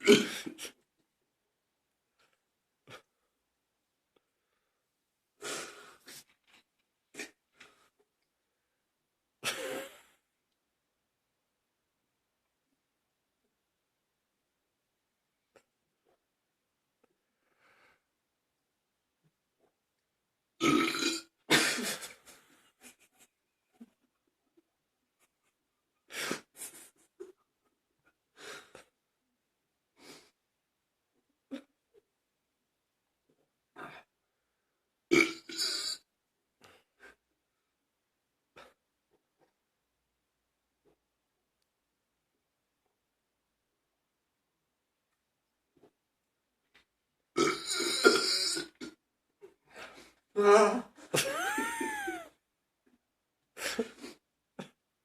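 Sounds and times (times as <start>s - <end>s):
person burping: 0.0s - 0.6s, 20.6s - 22.0s, 35.1s - 36.0s, 47.4s - 49.0s, 50.4s - 52.3s.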